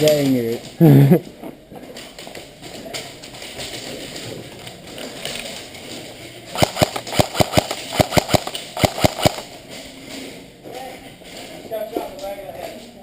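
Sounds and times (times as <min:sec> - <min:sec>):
airsoft gun shots: 0:06.6 - 0:09.5.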